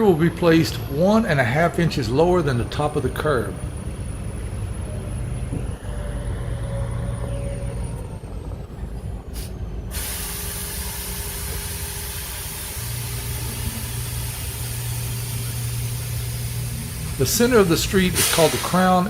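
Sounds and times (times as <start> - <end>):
diesel machinery engine drone: 0.0 - 19.0
steady hiss: 10.0 - 19.0.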